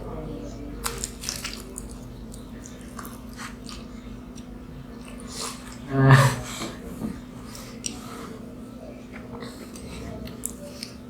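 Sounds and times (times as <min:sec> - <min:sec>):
steady low hum: 0:00.0 - 0:11.0
throat vocal sound: 0:00.7 - 0:06.8
person chewing food: 0:00.8 - 0:08.4.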